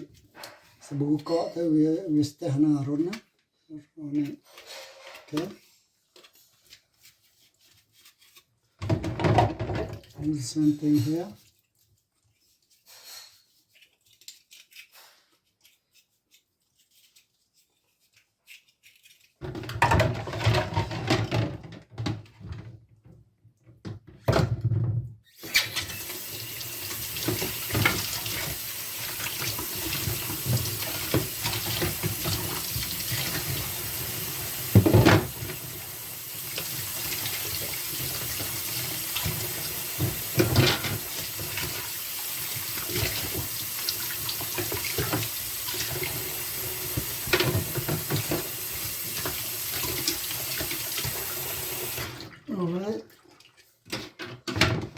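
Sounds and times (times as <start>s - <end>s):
tap running water into sink: 25.4s - 52.3s.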